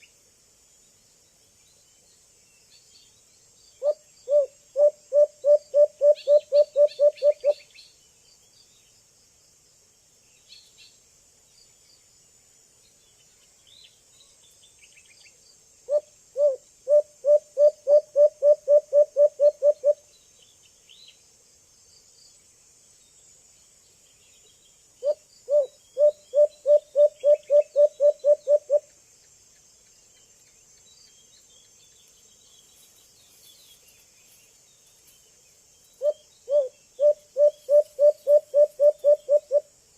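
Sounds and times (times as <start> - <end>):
insect drone: 0.0 - 39.9
dove hooting: 3.8 - 7.6, 15.9 - 20.0, 25.0 - 28.9, 36.0 - 39.7.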